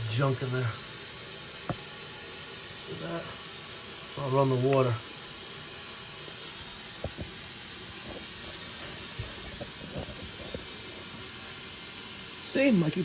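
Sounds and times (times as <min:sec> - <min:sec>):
water hissing through valve: 0:00.0 - 0:13.0.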